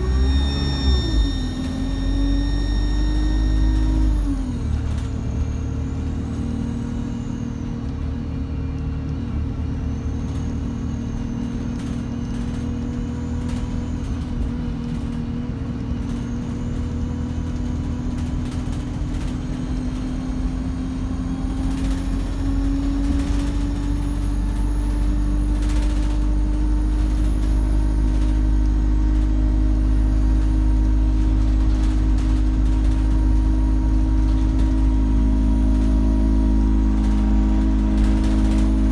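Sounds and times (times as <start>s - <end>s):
turbocharger whistling: 0.0s - 7.8s
diesel bus engine drone: 0.0s - 38.9s.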